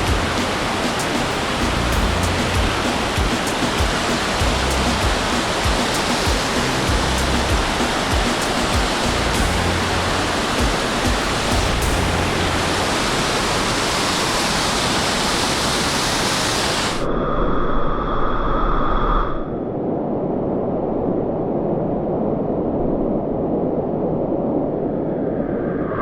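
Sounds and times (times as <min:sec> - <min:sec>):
waterfall rushing: 0:00.0 - 0:17.1.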